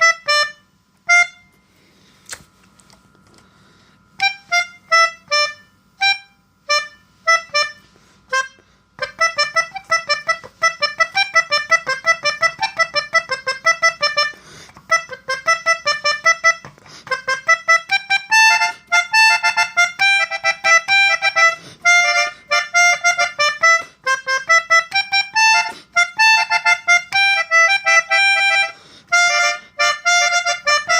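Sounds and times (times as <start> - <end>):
multi-tone bus horn tune: 0.0 - 1.5, 17.2 - 30.9.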